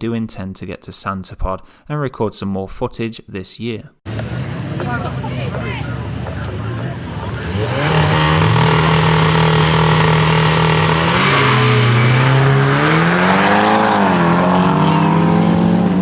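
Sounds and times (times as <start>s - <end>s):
racing car engine revving: 4.1s - 16.0s.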